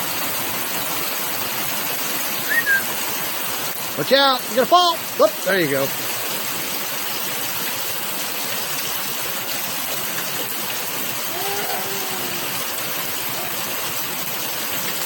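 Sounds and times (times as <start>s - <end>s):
steady rain falling: 0.0s - 15.0s
faint voice: 11.2s - 14.0s.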